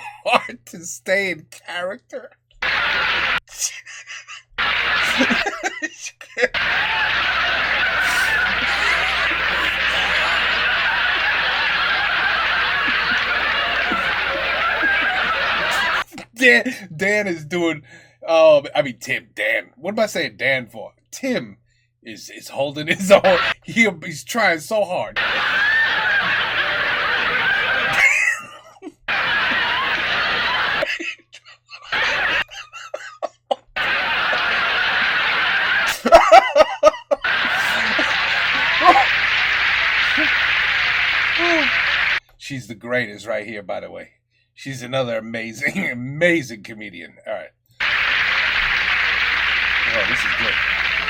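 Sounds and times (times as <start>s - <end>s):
audience laughing: 2.6s - 16.1s, 22.9s - 23.6s, 25.2s - 42.2s, 47.8s - 51.0s.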